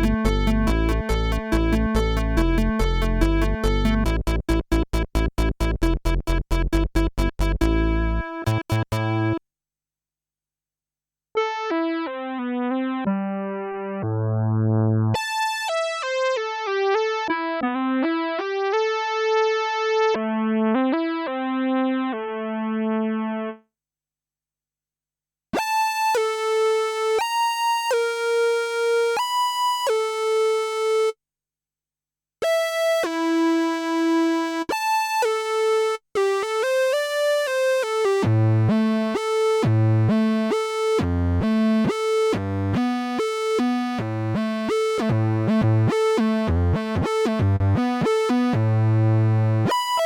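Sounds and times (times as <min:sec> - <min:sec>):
synthesizer melodic phrases: 0:00.0 - 0:04.2, 0:07.6 - 0:09.4, 0:11.4 - 0:19.1, 0:34.8 - 0:48.6
low bass notes: 0:00.0 - 0:09.4, 0:14.0 - 0:15.2, 0:44.1 - 0:49.7.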